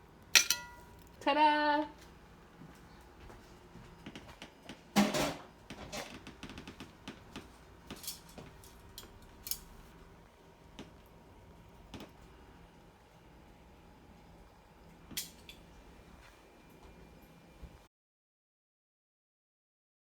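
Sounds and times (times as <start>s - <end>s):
kitchen items clicking and knocking: 0.4s - 0.8s
kitchen items clattering: 0.4s - 0.9s, 4.9s - 6.8s.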